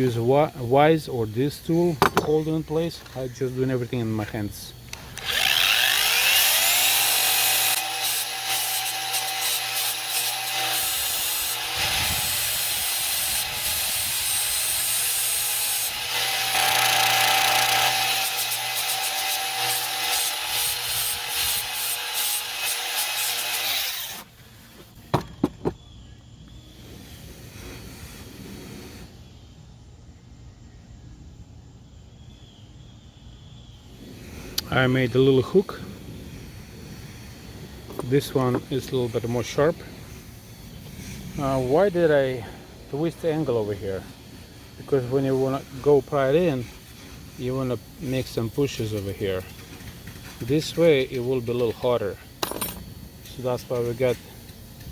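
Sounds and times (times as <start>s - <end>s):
power tool grinding metal: 4.9s - 24.4s.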